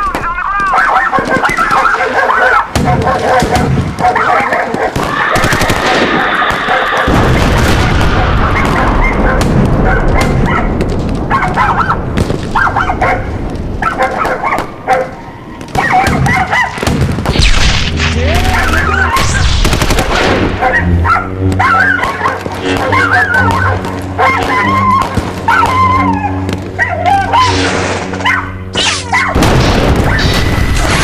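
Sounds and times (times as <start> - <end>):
voices shouting: 0.0 - 9.4, 18.2 - 19.4, 20.5 - 29.4
animal calls: 0.4 - 7.2, 20.5 - 29.4
bangs and booms: 4.9 - 14.9, 15.6 - 26.8, 29.3 - 31.0.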